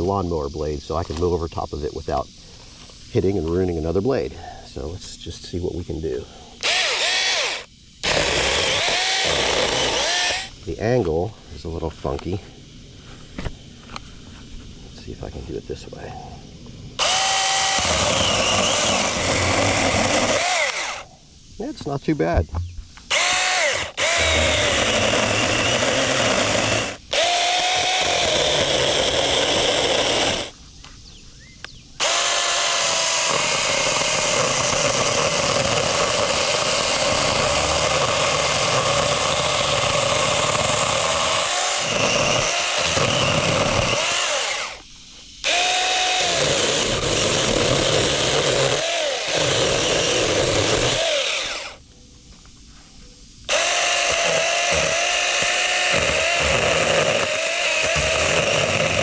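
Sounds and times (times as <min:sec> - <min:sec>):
mini chainsaw motor whining: 0:06.6 - 0:10.5, 0:17.0 - 0:21.1, 0:23.1 - 0:30.6, 0:32.0 - 0:44.8, 0:45.4 - 0:51.8, 0:53.5 - 0:59.0.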